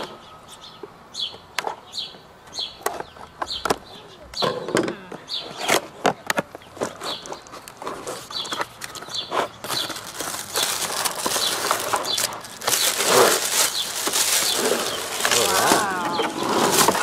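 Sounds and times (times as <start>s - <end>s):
packaging rustling and crinkling: 7.6s - 17.0s.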